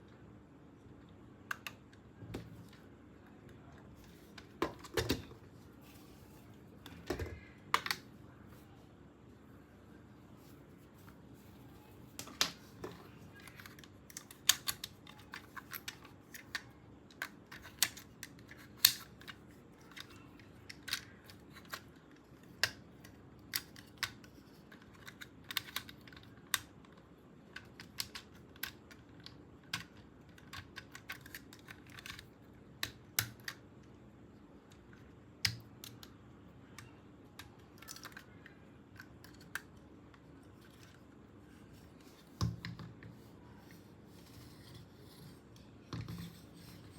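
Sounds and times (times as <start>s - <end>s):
plastic parts clicking and tapping: 12.2s - 33.9s, 34.6s - 41.0s.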